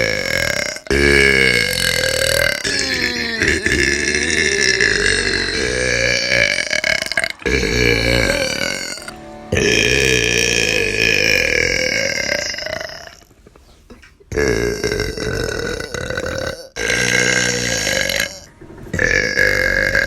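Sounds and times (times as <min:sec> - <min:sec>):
woman burping: 0:00.0 - 0:09.0.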